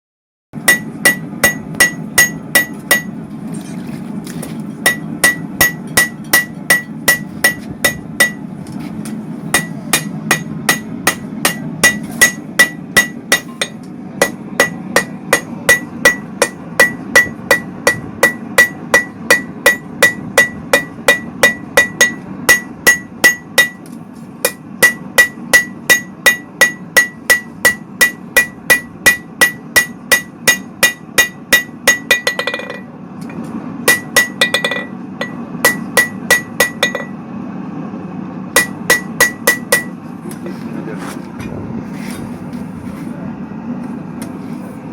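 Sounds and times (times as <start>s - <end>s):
hammer striking steel on anvil: 0.6s - 3.2s, 4.8s - 32.9s, 33.8s - 37.2s, 38.6s - 40.0s
low rumble: 39.9s - 44.9s.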